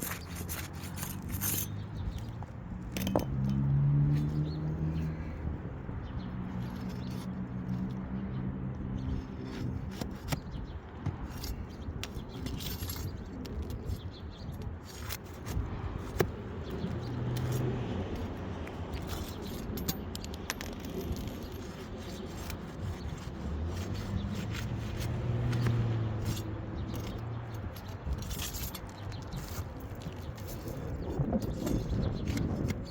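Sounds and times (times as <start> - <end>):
metal clicks and clinks: 0.0 - 1.8, 2.9 - 3.6, 11.3 - 13.6, 18.9 - 21.8, 26.2 - 32.8
metal tools scraping shingles: 0.0 - 2.3, 11.2 - 14.0, 18.9 - 32.9.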